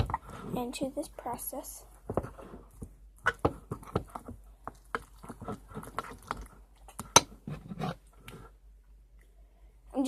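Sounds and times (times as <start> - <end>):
wet slime squishing: 0.0 - 9.4.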